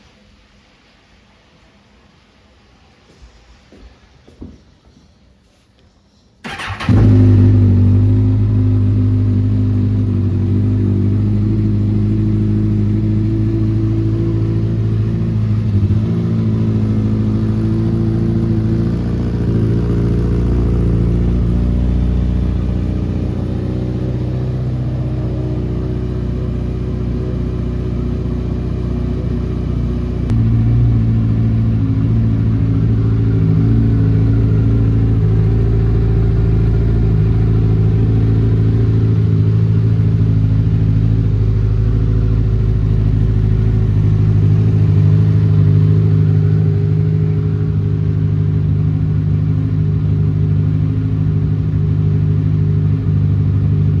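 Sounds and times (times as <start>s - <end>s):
motorcycle engine running: 6.4s - 54.0s.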